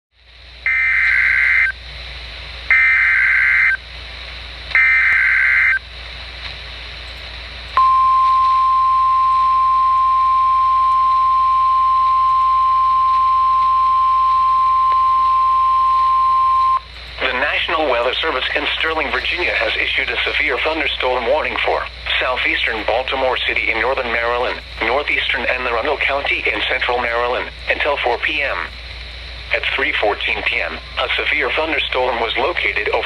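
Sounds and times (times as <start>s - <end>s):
screeching data bursts: 0.6s - 1.8s, 2.7s - 3.8s, 4.7s - 5.8s
steady alarm tone: 0.6s - 1.8s, 2.7s - 3.8s, 4.7s - 5.8s, 7.8s - 28.1s.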